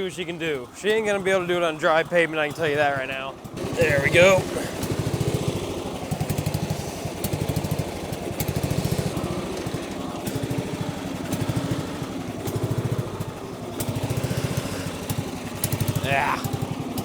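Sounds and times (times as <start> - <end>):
riding mower engine running: 0.0 - 17.0.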